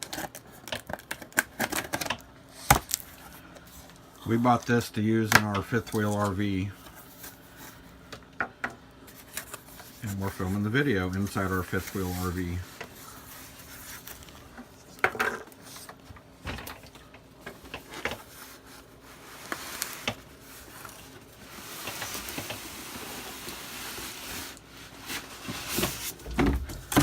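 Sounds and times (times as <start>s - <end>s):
scraping rustle: 17.8s - 27.0s
knocks and rubbing of packing: 25.1s - 27.0s.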